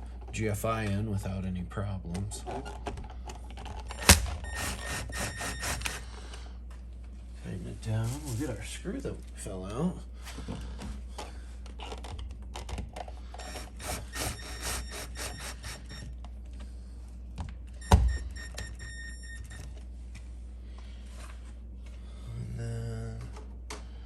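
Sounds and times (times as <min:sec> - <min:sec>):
screwdriver clicking and scraping: 0:03.9 - 0:06.0.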